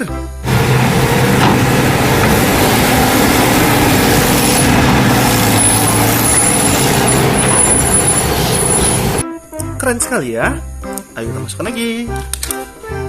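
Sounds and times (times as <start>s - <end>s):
truck engine rumbling: 0.4s - 9.2s.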